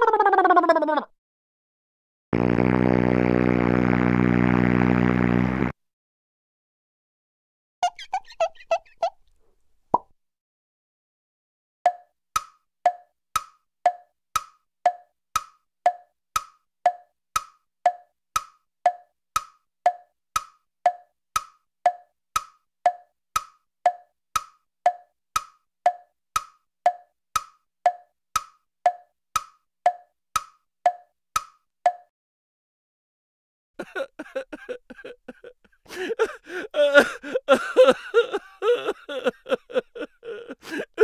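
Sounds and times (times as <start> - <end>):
hollow wood-block knocks: 11.9 - 32.1.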